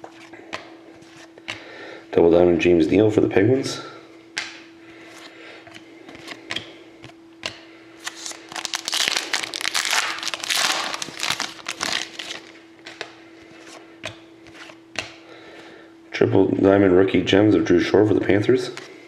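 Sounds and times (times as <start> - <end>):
card pack wrapper crinkling: 8.0 - 12.6.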